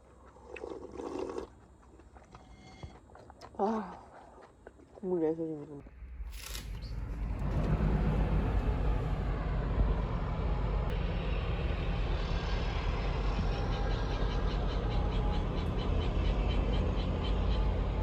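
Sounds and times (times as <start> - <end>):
car road and engine rumble: 5.8 - 18.0.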